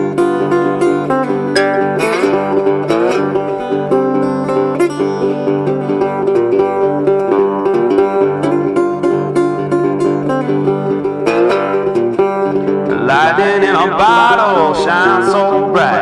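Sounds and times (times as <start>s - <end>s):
plucked strings with beat: 0.0s - 16.0s.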